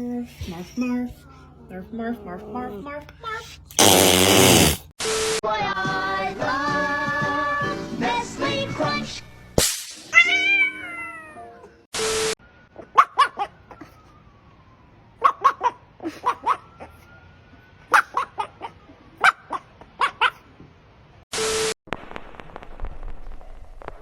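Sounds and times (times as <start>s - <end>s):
dog barking and yipping: 12.8s - 13.7s, 15.2s - 17.0s, 17.9s - 20.5s.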